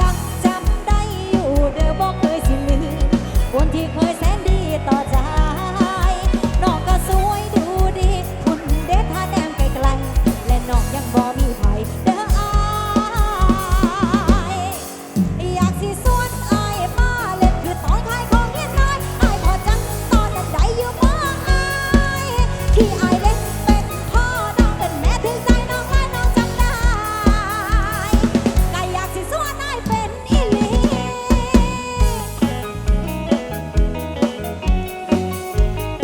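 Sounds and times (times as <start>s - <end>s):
drum kit beat: 0.0s - 36.0s
loud band music: 0.0s - 36.0s
wavering lead melody: 15.6s - 36.0s.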